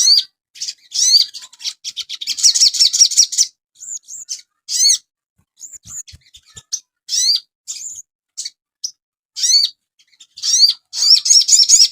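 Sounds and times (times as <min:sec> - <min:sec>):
songbird singing high chirps: 0:02.1 - 0:05.0.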